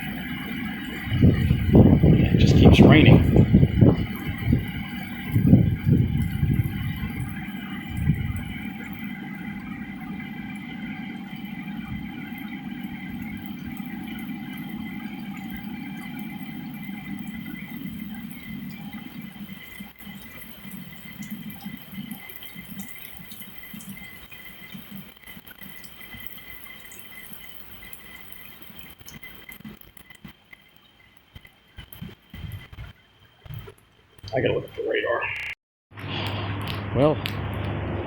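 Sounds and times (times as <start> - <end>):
heavy rain splashing: 0.0 - 30.4
drips and spatters: 0.0 - 34.5.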